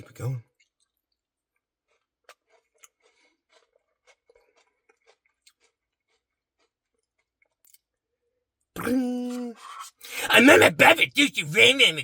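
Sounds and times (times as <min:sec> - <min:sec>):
person chewing: 0:00.5 - 0:08.0
cookie pieces crunching: 0:01.5 - 0:08.0.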